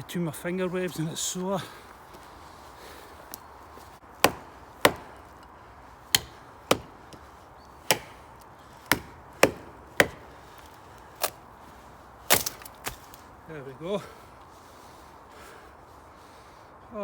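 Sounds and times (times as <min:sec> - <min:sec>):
knife chopping into tree trunk: 0:04.2 - 0:05.5, 0:06.1 - 0:11.4, 0:12.3 - 0:13.3.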